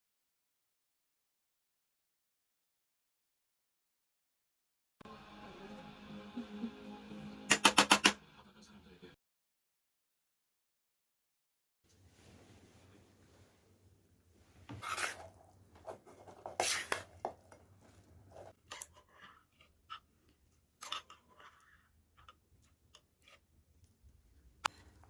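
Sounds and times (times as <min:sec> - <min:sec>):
spoon scraping a bowl: 0:14.7 - 0:17.4.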